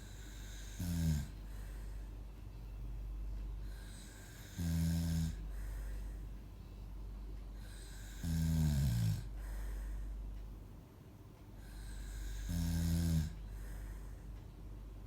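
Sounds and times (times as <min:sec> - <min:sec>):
person snoring: 0:00.0 - 0:01.4, 0:03.8 - 0:05.4, 0:07.6 - 0:09.3, 0:11.7 - 0:13.4
quiet breathing: 0:00.0 - 0:15.0.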